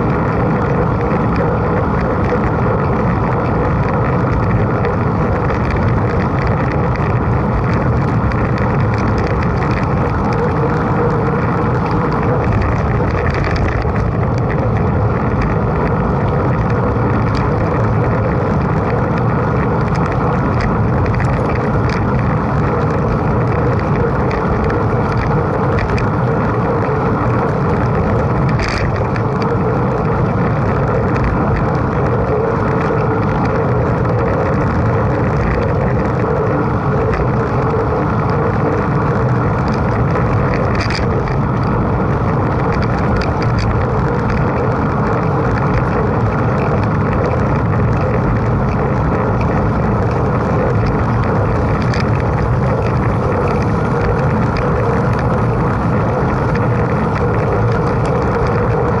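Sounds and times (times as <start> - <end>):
bike tyre and frame noise: 0.0 - 59.0
wind on microphone: 0.0 - 59.0.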